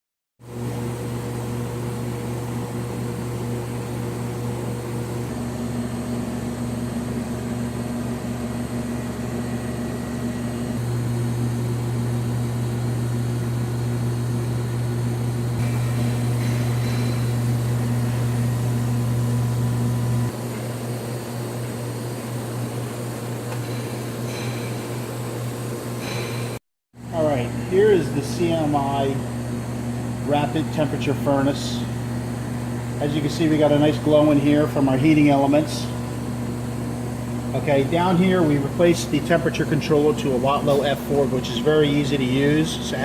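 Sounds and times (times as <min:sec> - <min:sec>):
furnace electrical hum and whir: 0:00.4 - 0:43.0.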